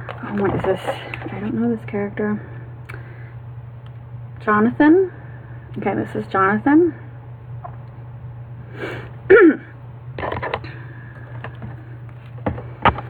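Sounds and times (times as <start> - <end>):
steady low hum: 0.0 - 13.0
person coughing: 9.3 - 9.7.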